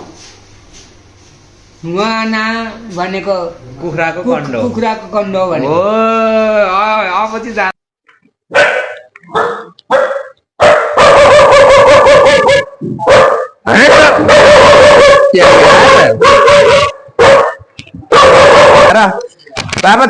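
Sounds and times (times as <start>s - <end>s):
dog barking loudly: 8.5s - 19.3s.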